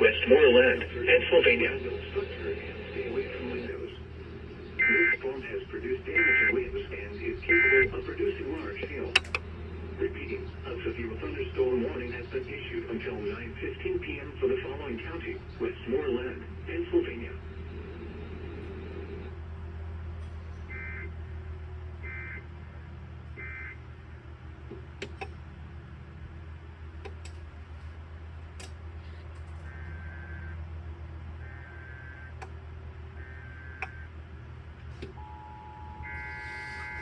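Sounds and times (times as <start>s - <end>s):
emergency alert data tones: 0.0s - 12.5s, 22.0s - 22.5s, 29.6s - 30.7s, 31.4s - 34.4s, 35.1s - 37.0s
steady tone: 0.0s - 15.2s, 35.1s - 37.0s
low hum: 0.0s - 37.0s
scattered clicks: 8.5s - 9.6s, 24.6s - 25.4s, 27.0s - 27.5s, 28.5s - 29.8s, 32.2s - 32.6s, 33.2s - 34.1s, 34.8s - 35.3s.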